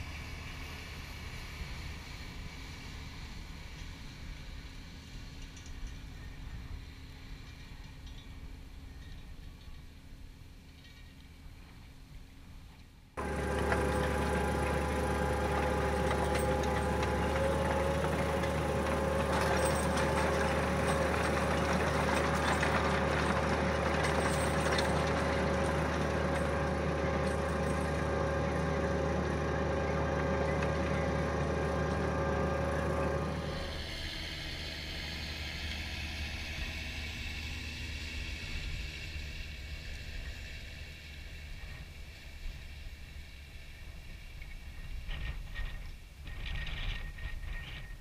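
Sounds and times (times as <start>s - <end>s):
tractor diesel engine running: 13.2s - 48.0s.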